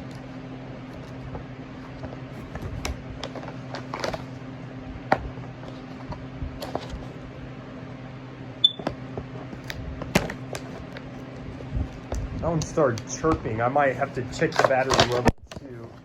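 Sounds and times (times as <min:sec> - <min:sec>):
steady low hum: 0:00.0 - 0:16.0
packaging rustling and clicks: 0:00.9 - 0:04.4, 0:09.4 - 0:13.4, 0:14.0 - 0:15.9
smoke alarm chirp: 0:08.6 - 0:08.8.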